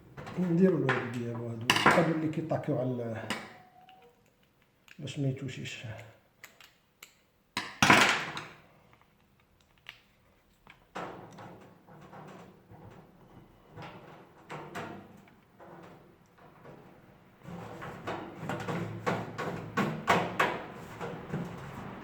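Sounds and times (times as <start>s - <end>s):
scraping and light knocks: 10.3s - 22.0s.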